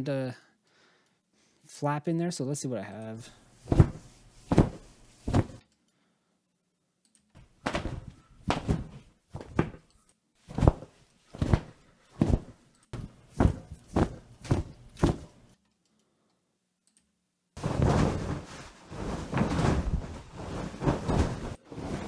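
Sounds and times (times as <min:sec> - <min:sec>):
wing flaps: 0:03.6 - 0:05.6, 0:07.4 - 0:09.8, 0:10.5 - 0:15.5, 0:17.6 - 0:22.0.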